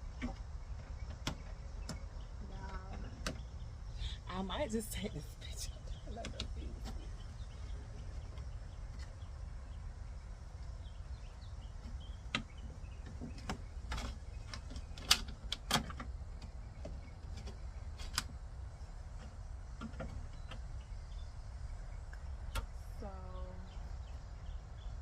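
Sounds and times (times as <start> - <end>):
light clicks and knocks: 11.6 - 20.8.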